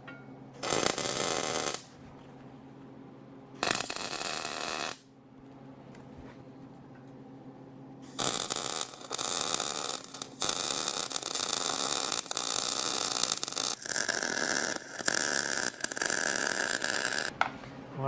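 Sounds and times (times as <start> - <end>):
welding arc crackling and hissing: 0.6 - 2.0, 3.6 - 5.1, 8.0 - 17.3.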